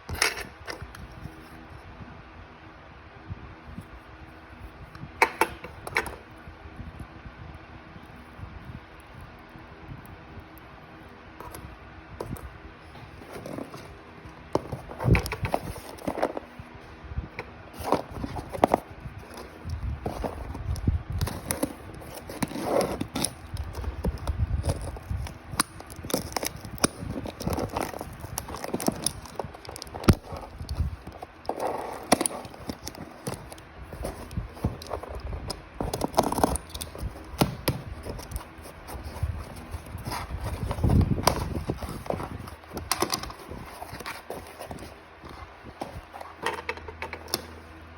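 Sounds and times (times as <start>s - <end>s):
packaging crinkling: 17.6s - 47.5s.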